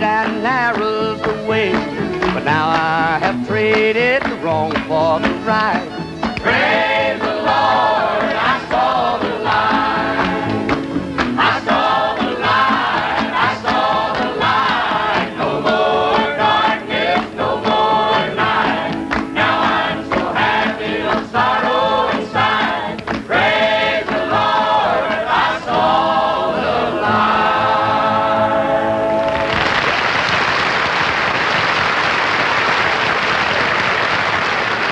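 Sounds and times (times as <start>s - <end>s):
voices singing in harmony: 0.0s - 29.6s
band playing: 0.0s - 29.8s.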